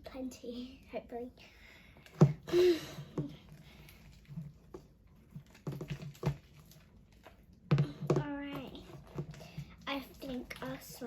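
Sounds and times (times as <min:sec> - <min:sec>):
slime squelching in a bowl: 0:00.0 - 0:11.0.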